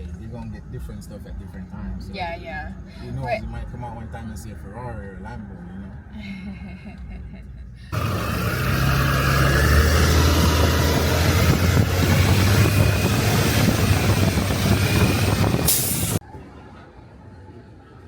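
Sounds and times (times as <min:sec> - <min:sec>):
vehicle engine droning: 0:07.9 - 0:16.2
loud rush of noise: 0:08.0 - 0:16.2
microphone noise: 0:09.8 - 0:16.2.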